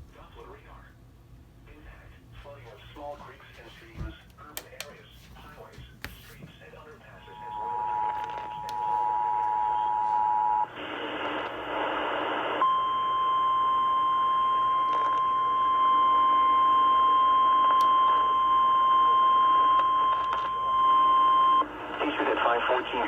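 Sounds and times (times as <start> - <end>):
radio static burst: 21.7 - 23.0.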